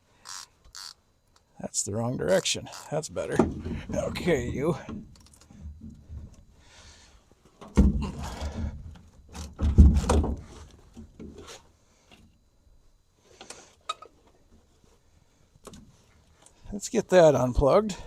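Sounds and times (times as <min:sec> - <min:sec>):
straining metal of ratchet: 0:00.2 - 0:01.0.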